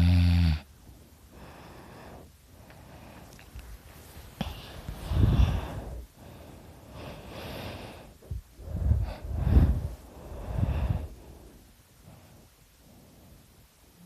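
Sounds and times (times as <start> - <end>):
man snoring loudly: 0.0 - 0.7.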